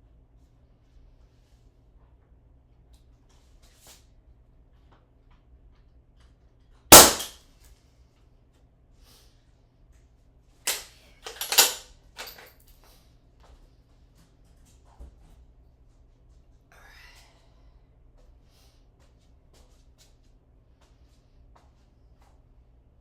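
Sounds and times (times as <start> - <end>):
nail gun shot: 6.9 - 7.3
sharp clatters and knocks: 10.7 - 12.5.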